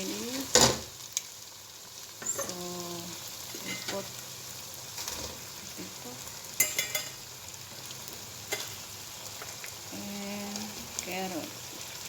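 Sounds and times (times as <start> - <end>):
chicken sizzling in a pan: 0.0 - 12.0.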